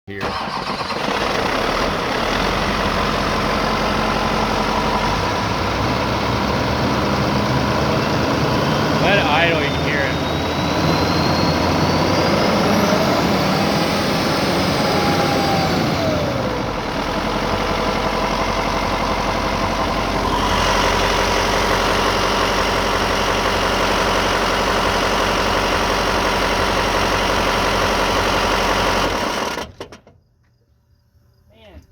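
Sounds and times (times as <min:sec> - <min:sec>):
diesel engine rattling: 0:00.1 - 0:29.9
turbo whine: 0:07.2 - 0:16.9.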